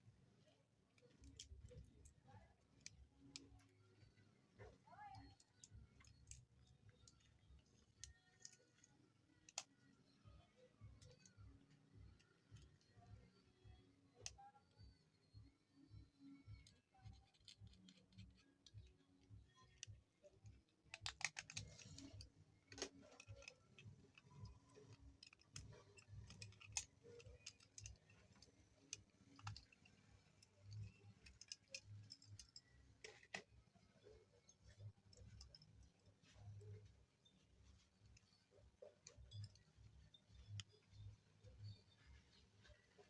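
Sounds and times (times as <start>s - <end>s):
plastic phone parts clicking: 7.1s - 9.8s, 20.7s - 33.5s.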